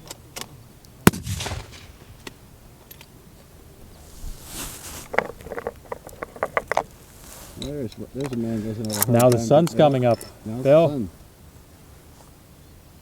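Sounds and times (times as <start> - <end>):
rifle shot with echo: 1.1 - 2.6.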